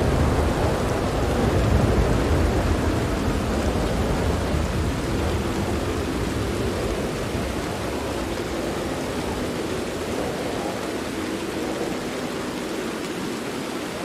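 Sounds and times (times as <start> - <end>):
rain on a tent: 0.0 - 14.0
thunder rumble: 0.0 - 14.0.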